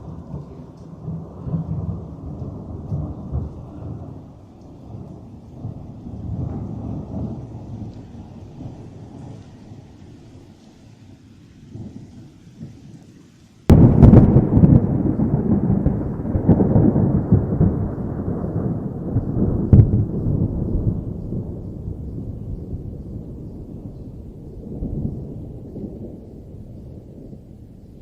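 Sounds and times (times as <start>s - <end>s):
rolling thunder rumble: 0.0s - 10.6s, 13.7s - 28.0s
sharp thunder crack: 13.7s - 27.5s.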